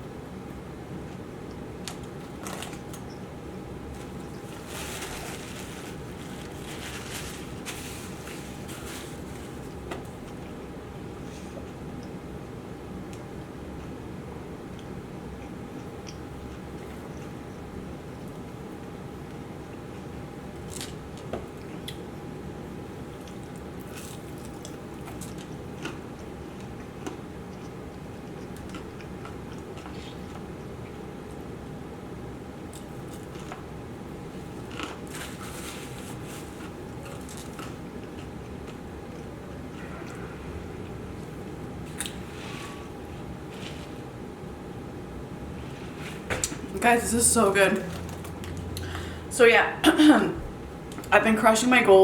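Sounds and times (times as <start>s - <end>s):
low background hum: 0.0s - 52.0s
chewing and crunching food: 1.0s - 3.2s, 14.7s - 31.5s, 32.4s - 42.4s
chewing: 23.2s - 31.0s, 34.4s - 35.9s.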